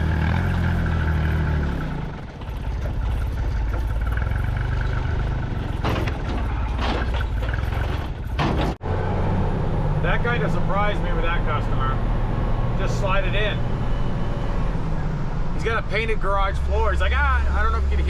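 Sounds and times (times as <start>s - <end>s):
truck engine running: 0.0s - 18.0s
clatters and knocks: 2.1s - 8.8s.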